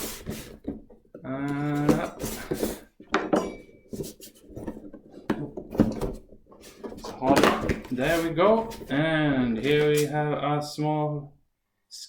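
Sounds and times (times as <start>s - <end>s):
cardboard box scraping and rustling: 1.7s - 2.9s, 7.9s - 9.0s.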